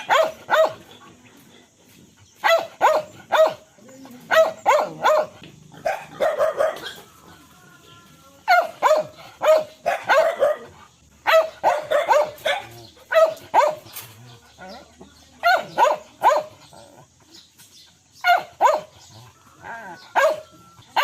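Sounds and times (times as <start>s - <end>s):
dog barking: 0.0s - 1.0s, 2.4s - 3.7s, 4.3s - 7.1s, 8.5s - 14.0s, 15.4s - 16.6s, 18.2s - 19.1s, 19.9s - 21.0s.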